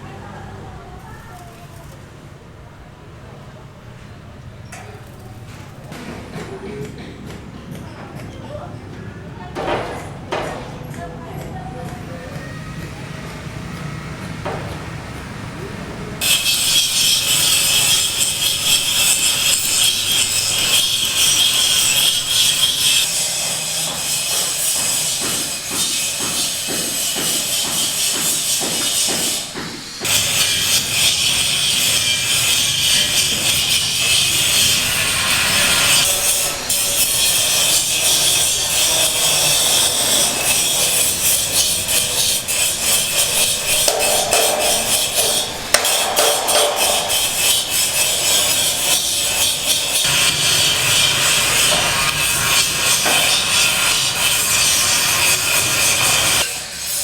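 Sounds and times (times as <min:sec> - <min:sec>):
saw cutting with harsh rasp: 0:16.2 - 0:57.0.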